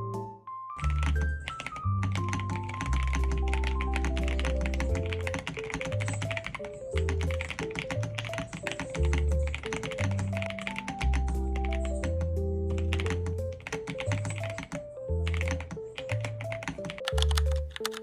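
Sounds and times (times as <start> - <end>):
background music with bass line: 0.0 - 5.2, 10.2 - 13.6
mechanical keyboard typing: 0.8 - 18.0.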